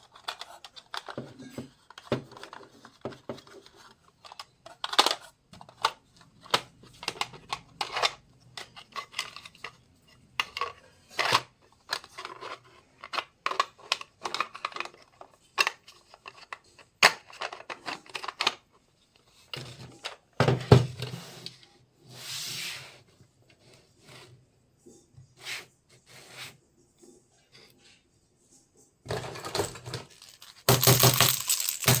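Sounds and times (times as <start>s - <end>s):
plastic toy pieces clicking: 30.1s - 32.0s.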